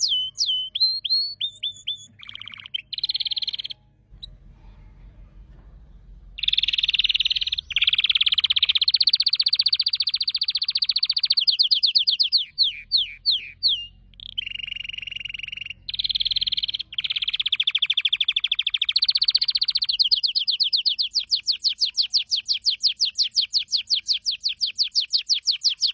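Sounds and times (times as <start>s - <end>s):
canary singing trills: 0.0s - 4.4s, 6.3s - 25.9s.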